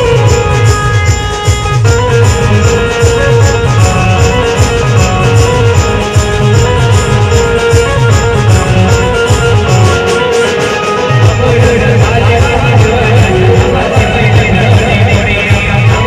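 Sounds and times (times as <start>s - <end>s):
amplified band music: 0.0s - 16.0s.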